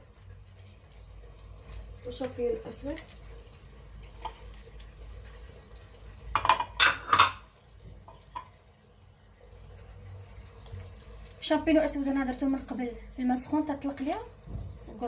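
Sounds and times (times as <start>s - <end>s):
utensil clatter: 6.3s - 7.5s
utensil clinking against a pot: 6.3s - 8.6s.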